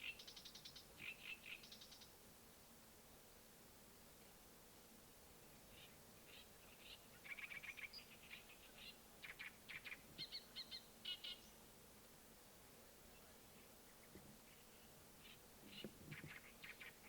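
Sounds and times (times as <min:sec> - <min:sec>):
songbird chirping: 0:00.0 - 0:02.2, 0:05.4 - 0:11.7, 0:12.8 - 0:17.0.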